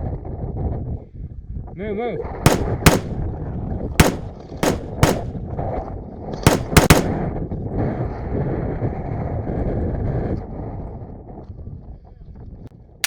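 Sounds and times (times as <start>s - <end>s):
airsoft rifle shots: 2.5s - 3.3s, 4.0s - 5.5s, 6.5s - 7.4s.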